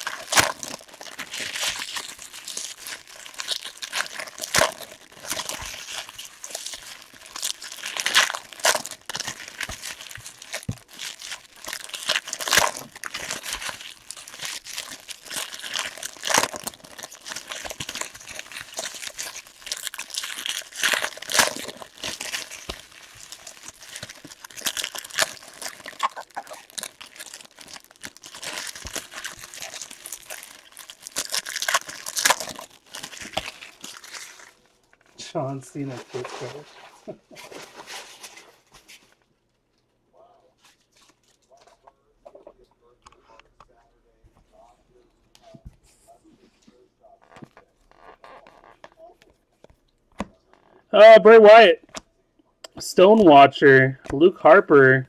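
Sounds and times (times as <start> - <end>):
card pack wrappers crinkling: 0.0 - 34.6.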